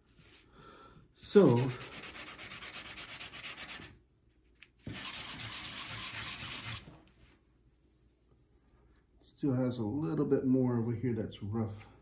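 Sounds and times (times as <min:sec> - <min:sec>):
sandpaper rubbing on metal: 0:01.4 - 0:03.9, 0:04.9 - 0:06.8.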